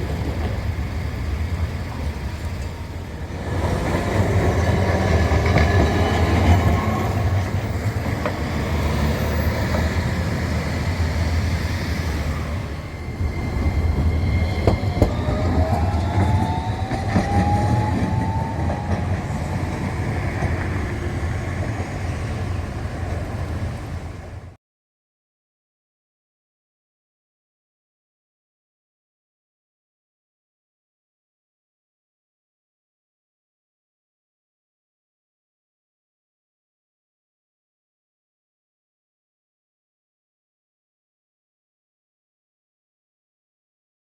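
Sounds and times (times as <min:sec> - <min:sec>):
rail vehicle rumble and wheel noise: 0:00.0 - 0:24.6
rising whine: 0:08.5 - 0:21.8.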